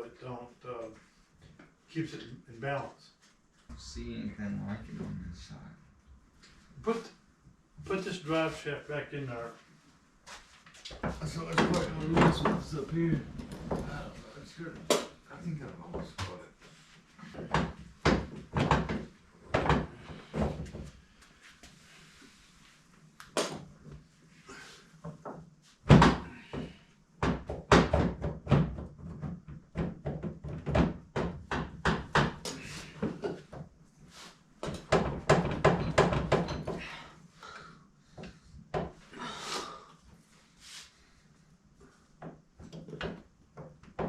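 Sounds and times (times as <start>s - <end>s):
metal knocks and clunks: 11.0s - 14.2s, 34.6s - 36.9s.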